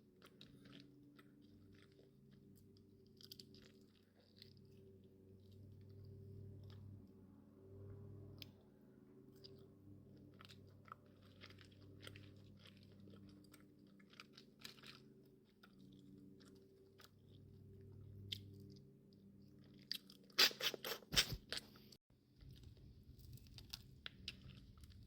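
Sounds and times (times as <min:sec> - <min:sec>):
shell crunching and cracking: 0:00.0 - 0:05.4, 0:22.4 - 0:25.0
wet chewing and mouth clicks: 0:00.0 - 0:07.0, 0:09.2 - 0:25.0.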